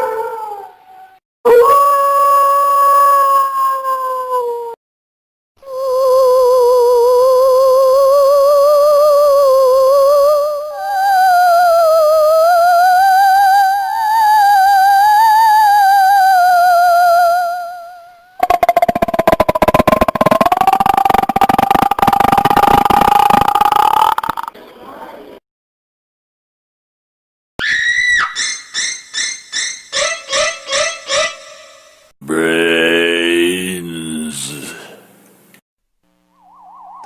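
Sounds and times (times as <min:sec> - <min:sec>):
howl: 0:00.0 - 0:04.8
harsh buzzing rattling wail: 0:18.4 - 0:24.5.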